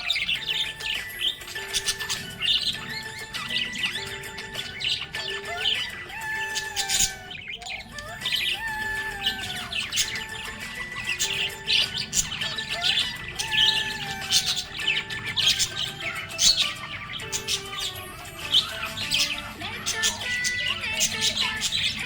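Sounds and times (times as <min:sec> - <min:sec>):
budgerigars chirping: 0:00.0 - 0:22.0.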